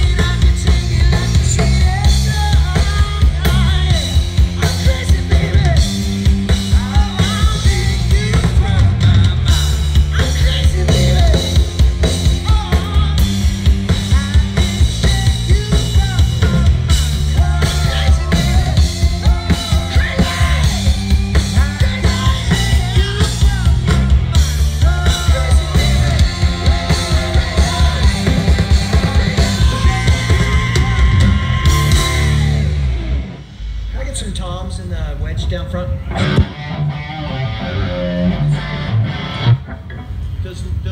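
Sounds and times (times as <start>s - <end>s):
driving drum kit: 0.0s - 36.7s
distorted instruments: 0.0s - 40.9s
person singing: 6.7s - 11.7s, 14.0s - 32.8s.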